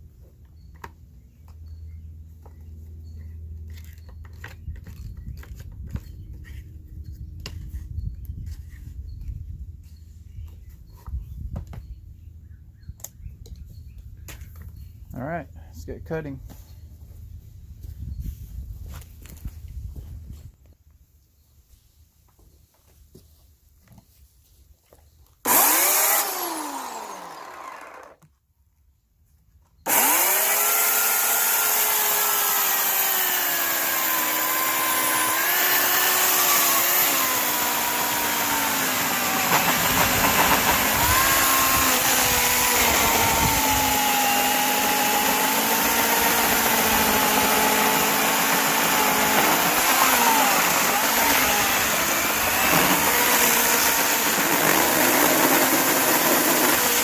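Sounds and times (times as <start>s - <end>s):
electric chainsaw motor: 25.4s - 28.2s, 29.9s - 57.0s.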